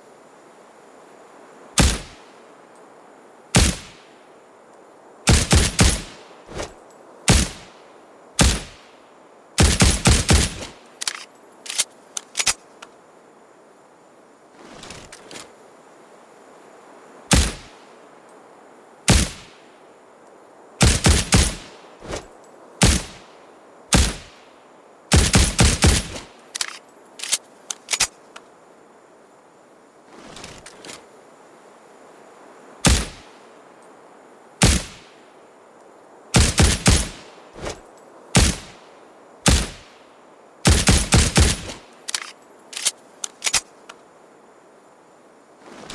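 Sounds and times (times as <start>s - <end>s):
suppressed pistol shots: 1.8s - 2.2s, 34.6s - 35.1s, 39.5s - 39.9s
faint clicks: 10.5s - 13.0s, 26.1s - 28.5s, 41.6s - 44.1s.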